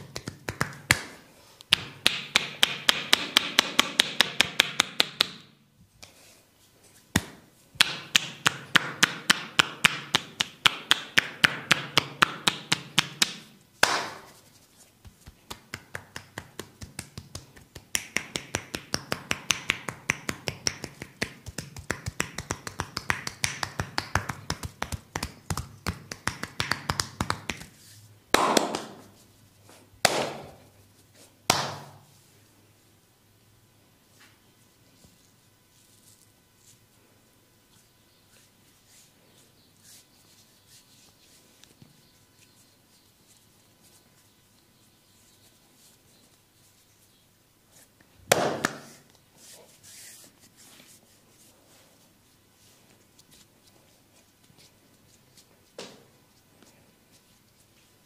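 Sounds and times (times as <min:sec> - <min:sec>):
rapid percussive massage taps: 0:00.0 - 0:05.5, 0:07.1 - 0:14.3, 0:15.0 - 0:29.1
heavy slaps on body: 0:07.1 - 0:14.4, 0:28.3 - 0:29.0, 0:30.0 - 0:30.6, 0:31.5 - 0:32.0, 0:48.3 - 0:48.9.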